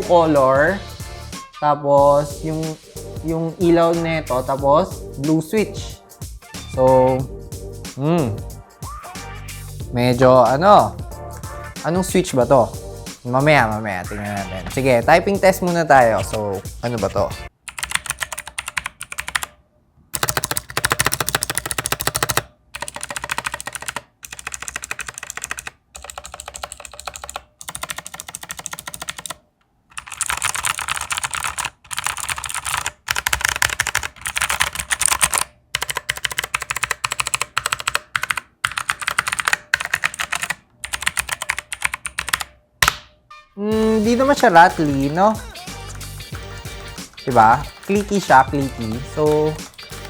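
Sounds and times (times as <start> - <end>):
clicky keyboard typing: 17.7 - 19.6, 20.2 - 43.0.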